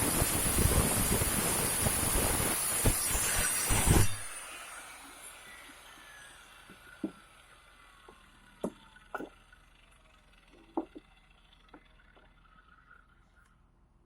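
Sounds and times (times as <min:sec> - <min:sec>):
angle grinder whine coasting down: 0:00.0 - 0:13.6
sharp knocks: 0:08.6 - 0:09.3, 0:10.6 - 0:11.0.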